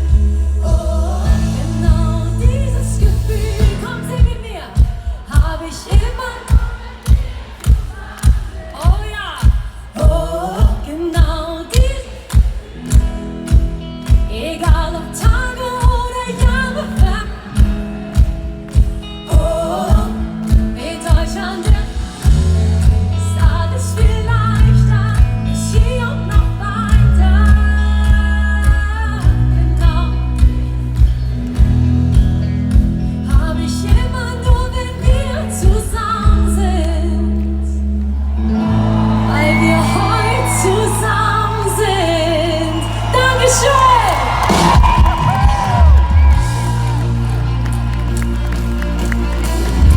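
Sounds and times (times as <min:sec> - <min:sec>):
heavy bass line: 0:00.0 - 0:04.2, 0:22.2 - 0:41.7
person singing: 0:00.0 - 0:12.8
live pop band playing: 0:00.0 - 0:49.9
kick drum beat: 0:00.1 - 0:14.9.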